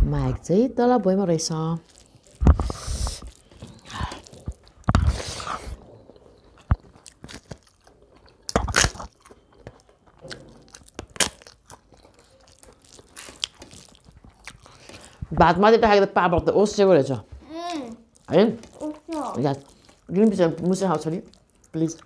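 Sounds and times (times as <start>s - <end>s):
person chewing food: 1.8s - 15.3s, 17.9s - 20.2s, 21.0s - 22.0s
loud crunches: 8.5s - 14.9s.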